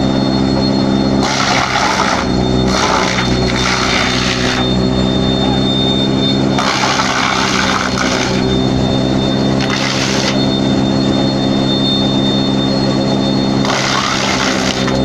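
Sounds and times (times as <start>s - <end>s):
wood crusher motor hum: 0.0s - 15.0s
rough grinding noise: 1.1s - 10.8s, 13.6s - 15.0s.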